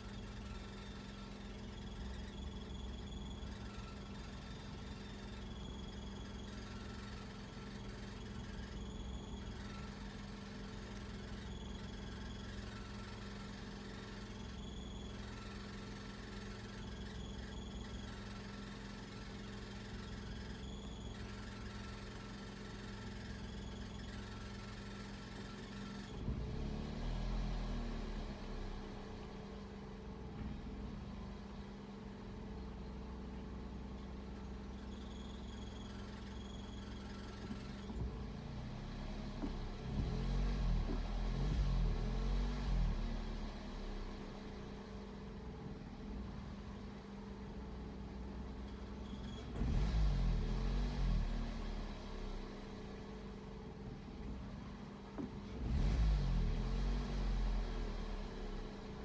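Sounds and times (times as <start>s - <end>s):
car engine idling roughly: 0.0s - 26.4s, 34.2s - 42.3s.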